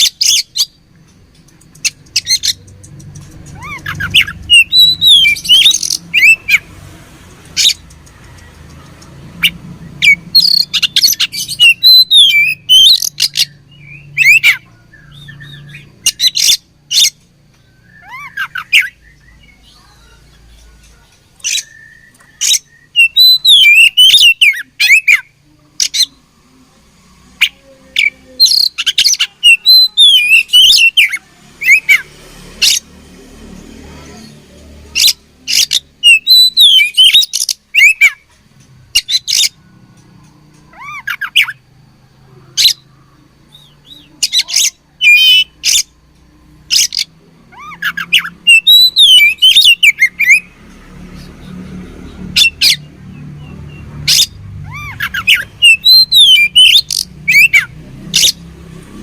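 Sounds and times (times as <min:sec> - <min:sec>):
bird singing clicks and whistles: 0:01.0 - 0:06.4.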